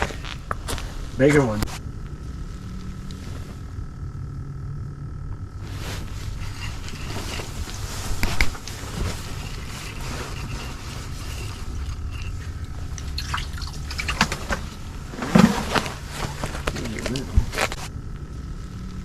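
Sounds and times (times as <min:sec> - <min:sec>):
water dripping and sloshing: 0:11.2 - 0:14.8.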